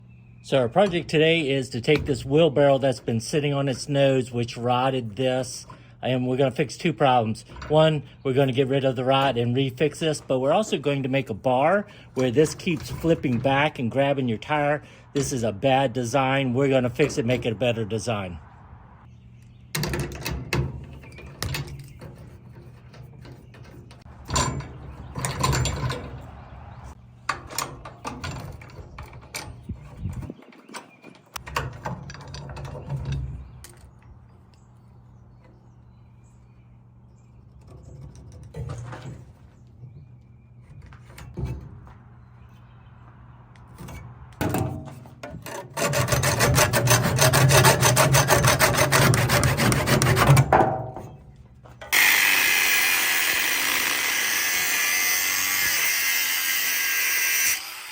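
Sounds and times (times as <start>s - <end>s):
knocking and scraping on wheelbarrow: 12.2s - 14.5s, 37.6s - 42.1s, 43.7s - 51.9s
power tool running: 51.9s - 57.9s.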